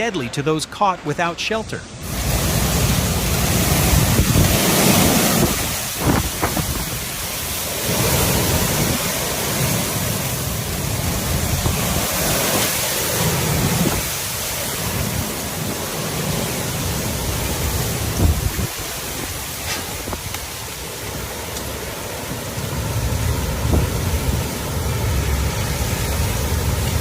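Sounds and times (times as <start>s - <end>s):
heavy rain hissing: 0.0s - 27.0s
strong wind gusting: 2.0s - 27.0s
wind buffeting microphone: 2.1s - 27.0s.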